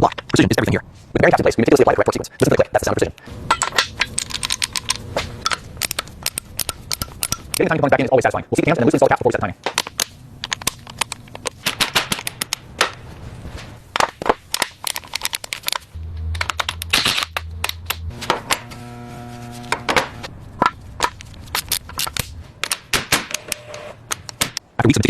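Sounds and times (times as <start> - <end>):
metal parts and tools clicking: 3.4 - 7.8, 9.6 - 13.0, 14.5 - 18.7, 19.7 - 24.6
low hum: 15.9 - 22.6.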